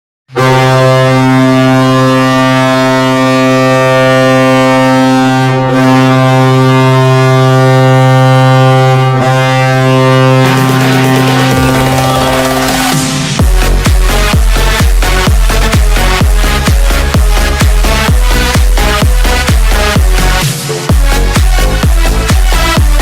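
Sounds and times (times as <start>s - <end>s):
arena goal horn low blast: 0.3s - 23.0s
goal music: 0.3s - 23.0s.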